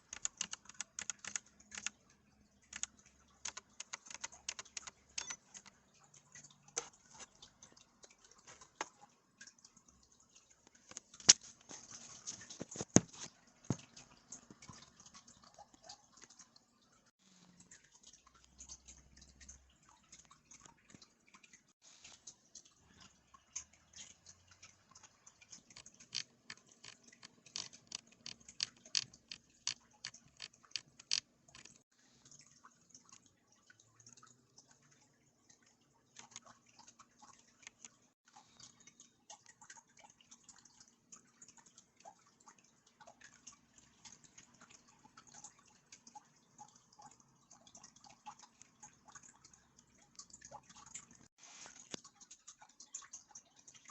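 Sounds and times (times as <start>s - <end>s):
typing on mechanical keyboard: 0.0s - 2.0s, 2.7s - 5.8s, 25.6s - 31.8s.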